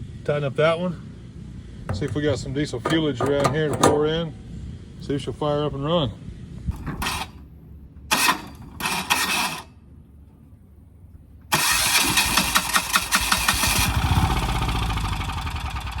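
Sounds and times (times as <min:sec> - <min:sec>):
diesel generator knocking: 0:01.8 - 0:04.0
diesel generator cranking: 0:01.8 - 0:04.3, 0:06.7 - 0:07.5, 0:08.1 - 0:09.8, 0:11.5 - 0:16.0.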